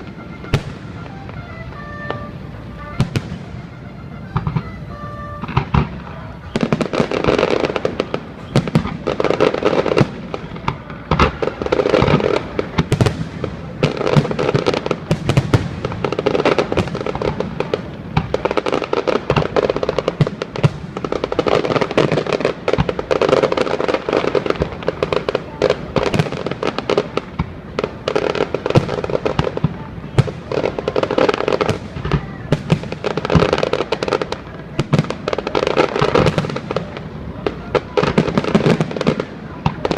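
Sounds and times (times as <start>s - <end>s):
fireworks bangs and crackles: 0.0s - 39.9s.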